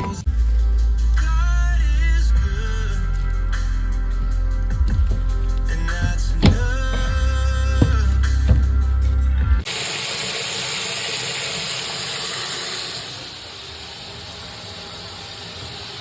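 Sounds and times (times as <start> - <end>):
background music: 0.0 - 9.7
water hissing through toilet valve: 9.6 - 16.0.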